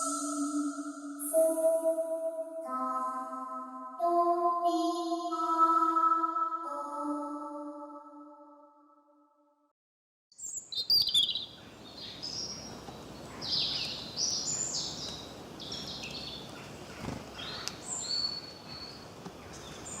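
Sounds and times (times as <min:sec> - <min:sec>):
birds chirping and calling: 0:10.4 - 0:20.0.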